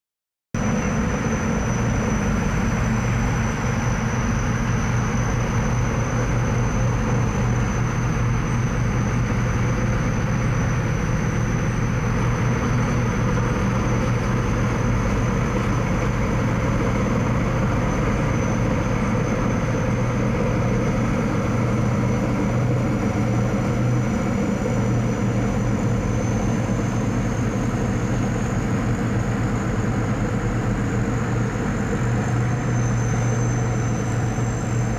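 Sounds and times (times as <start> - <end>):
combine harvester engine hum: 0.6 - 34.9
thin high whine: 0.6 - 34.9.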